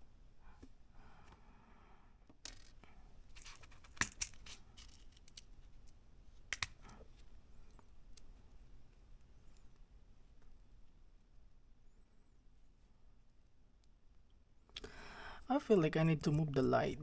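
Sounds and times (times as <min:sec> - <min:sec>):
small plastic and metal parts clicking: 0:02.3 - 0:08.3.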